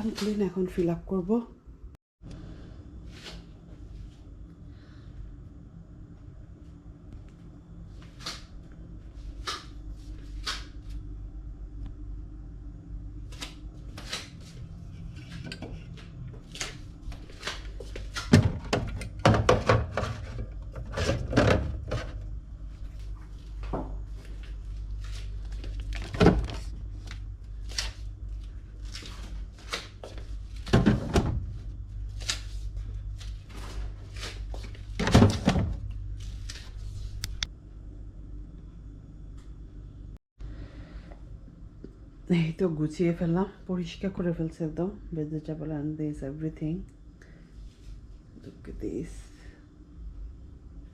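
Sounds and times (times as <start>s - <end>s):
refrigerator shelves clunking: 18.1s - 22.3s, 30.6s - 31.7s, 34.9s - 35.9s.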